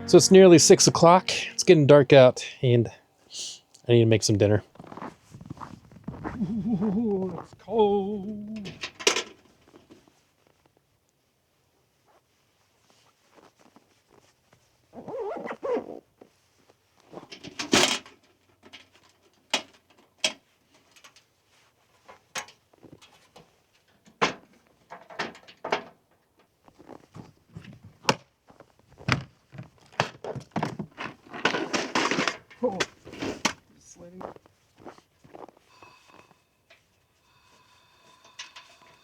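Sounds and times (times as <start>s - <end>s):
rustling scrapes: 4.7s - 6.5s.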